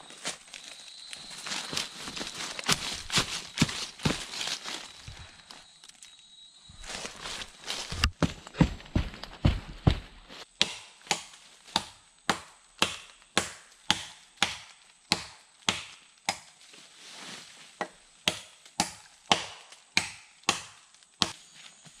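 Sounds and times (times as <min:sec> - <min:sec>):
wood chopped with a blade: 0:02.6 - 0:04.6, 0:07.7 - 0:16.6, 0:17.8 - 0:21.4.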